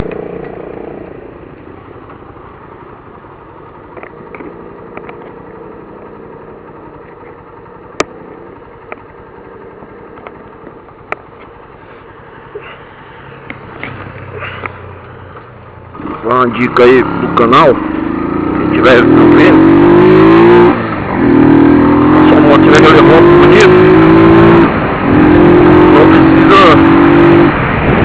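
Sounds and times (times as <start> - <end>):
motorcycle engine idling: 0.0 - 19.5.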